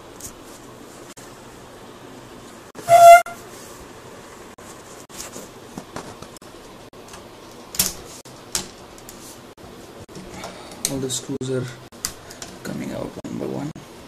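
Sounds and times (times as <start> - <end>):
loud horn-like tone: 2.8 - 3.4.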